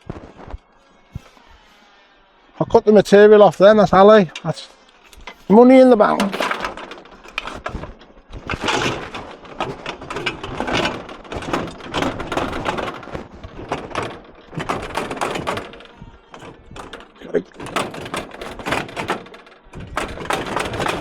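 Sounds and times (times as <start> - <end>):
metal chair frames clattering: 4.0 - 21.0.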